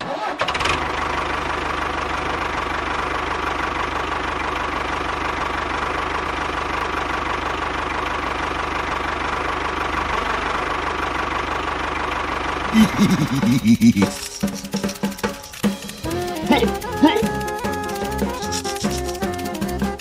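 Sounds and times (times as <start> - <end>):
small motor running: 9.7 - 20.0.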